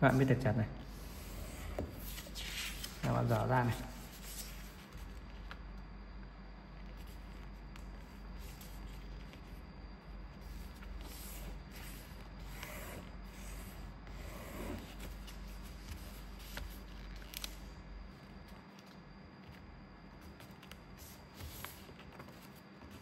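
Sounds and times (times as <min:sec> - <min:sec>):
paper being folded: 0:02.0 - 0:05.6, 0:14.8 - 0:17.7.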